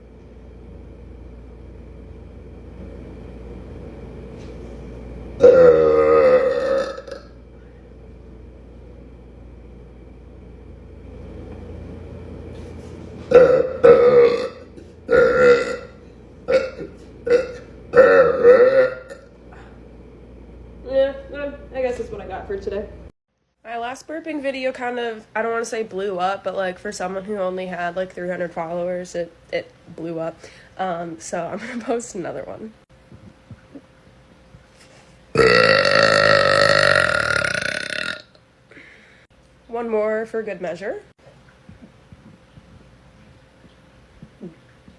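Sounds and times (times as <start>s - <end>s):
woman burping loudly: 5.4s - 7.4s, 13.3s - 19.3s, 35.4s - 38.4s.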